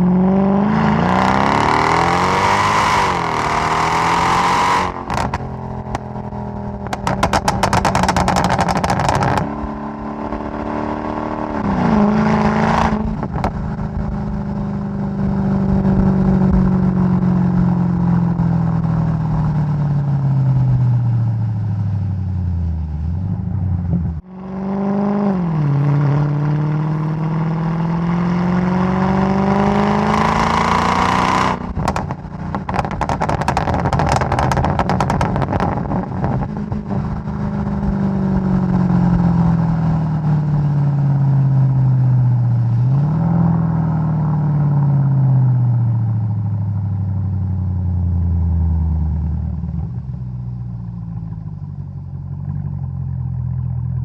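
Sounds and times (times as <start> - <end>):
car engine revving hard: 0.1 - 13.4, 24.4 - 36.5
exhaust pops and crackles: 4.9 - 9.7, 13.0 - 14.6, 31.5 - 39.5, 49.5 - 54.0.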